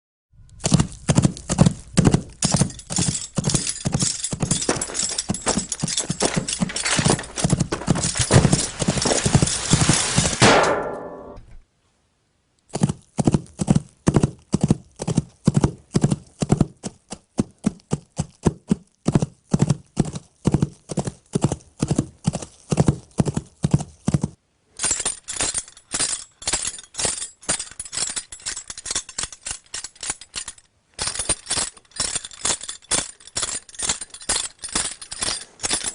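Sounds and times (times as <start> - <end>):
clip-clop hoofbeats: 0.6 - 10.4, 12.7 - 24.4, 25.0 - 35.9.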